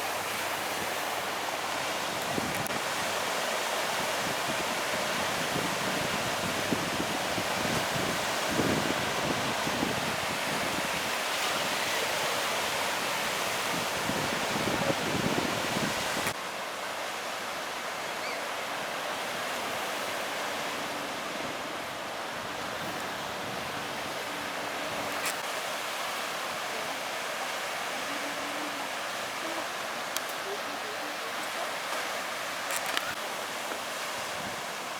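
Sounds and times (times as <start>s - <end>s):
surf washing on beach: 0.0s - 34.9s
wind buffeting microphone: 4.1s - 11.1s, 13.5s - 16.4s.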